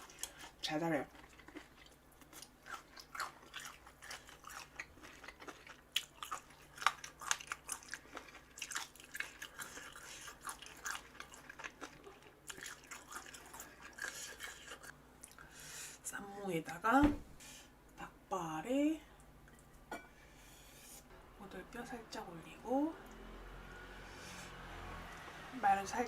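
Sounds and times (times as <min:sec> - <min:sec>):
person chewing crunchy food: 0:00.0 - 0:15.5.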